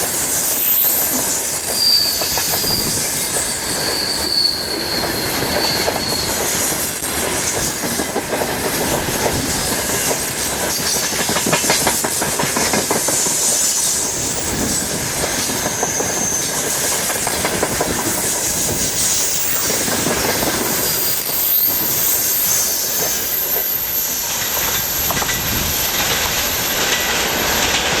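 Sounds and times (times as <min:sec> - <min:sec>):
high wheel squeal: 0:00.0 - 0:07.0, 0:13.3 - 0:28.0
train wheels rolling: 0:00.0 - 0:28.0
clickety-clack over rail joints: 0:00.9 - 0:28.0.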